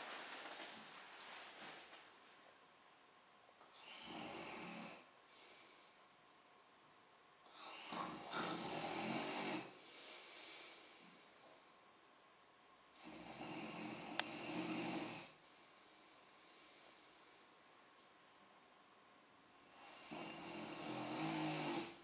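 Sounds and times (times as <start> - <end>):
person snoring: 3.8 - 5.1, 7.6 - 9.7, 13.0 - 15.4, 19.6 - 22.0.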